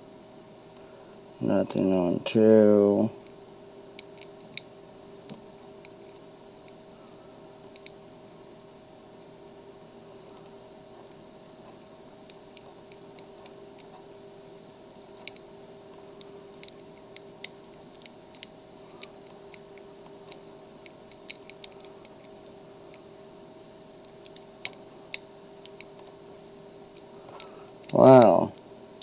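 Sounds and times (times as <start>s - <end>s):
faint steady hum: 0.0s - 29.0s.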